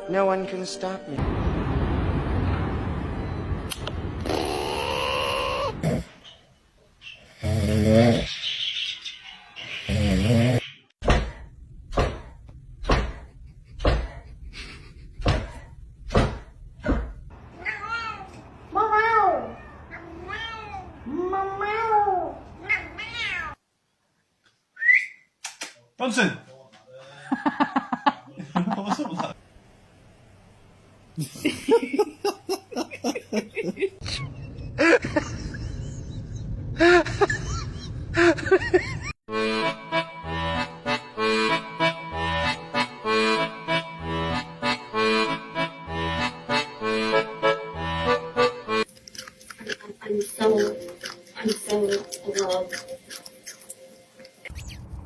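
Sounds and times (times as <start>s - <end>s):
cat meowing: 17.6s - 23.6s
upbeat instrumental music: 39.3s - 49.0s.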